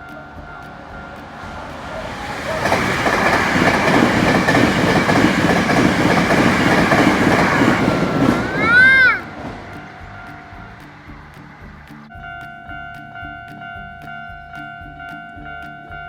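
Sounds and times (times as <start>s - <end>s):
train wheels rumbling and clacking: 0.6s - 11.8s.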